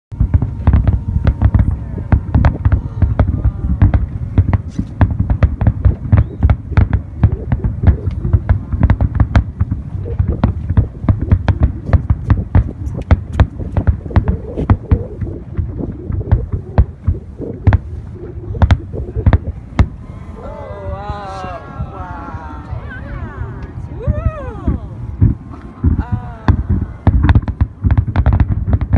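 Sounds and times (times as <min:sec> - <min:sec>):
deep low booming: 0:00.1 - 0:22.0, 0:23.6 - 0:28.9
firework shells bursting: 0:00.2 - 0:20.0.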